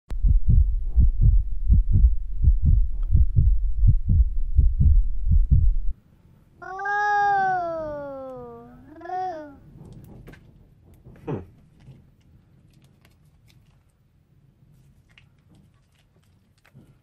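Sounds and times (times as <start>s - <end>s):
fast low thumps: 0.1s - 6.0s.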